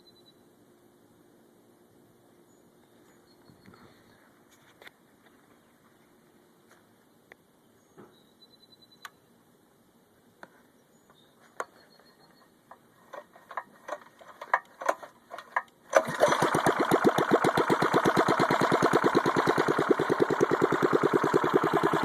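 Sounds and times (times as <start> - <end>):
small engine running: 15.9 - 22.0.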